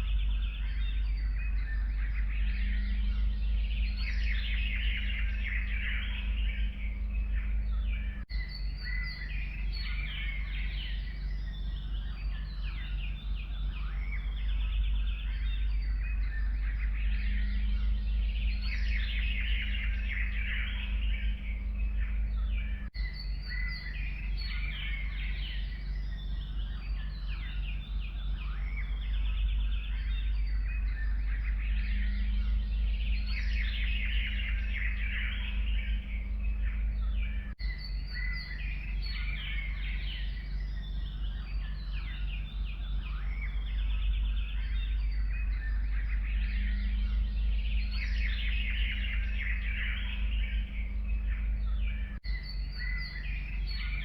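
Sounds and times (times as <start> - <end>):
low background rumble: 0.0 - 54.0
songbirds singing and chirping: 0.0 - 54.0.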